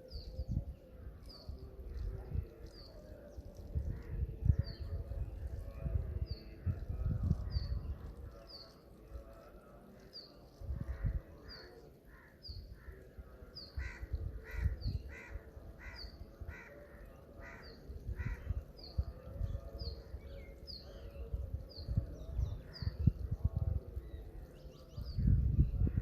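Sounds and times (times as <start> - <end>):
bird harsh calls: 13.6 - 18.9.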